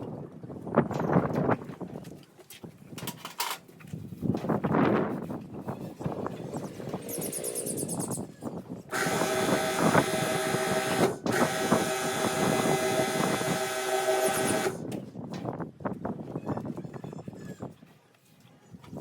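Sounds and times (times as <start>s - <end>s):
small motorised tool whining: 8.9s - 14.9s.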